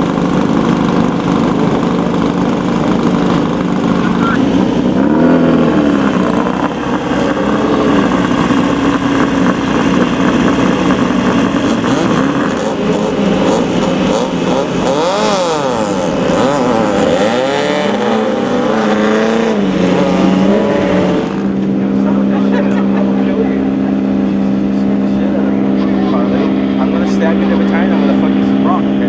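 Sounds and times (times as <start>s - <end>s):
engine revving: 0.0s - 29.0s.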